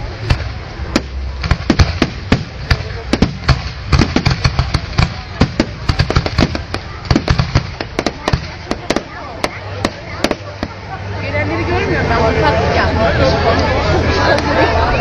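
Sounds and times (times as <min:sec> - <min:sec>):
low rumble of explosions: 0:00.0 - 0:11.2
fireworks bangs: 0:00.1 - 0:10.9.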